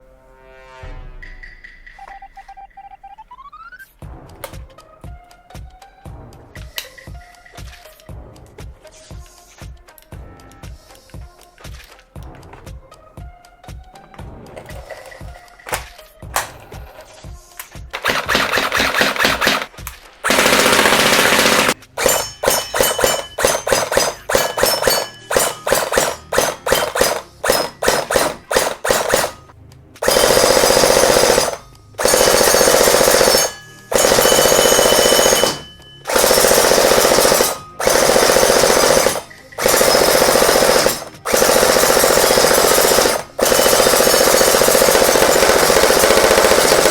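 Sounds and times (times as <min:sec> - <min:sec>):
electric gel blaster firing: 0:18.0 - 0:46.9.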